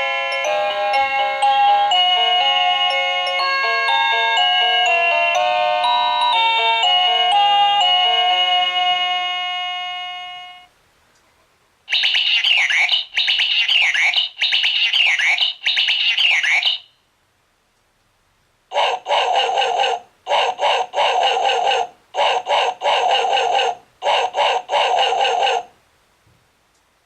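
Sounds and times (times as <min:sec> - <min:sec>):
electronic melody door chime: 0:00.0 - 0:10.7
warbling tone bursts: 0:11.9 - 0:16.9.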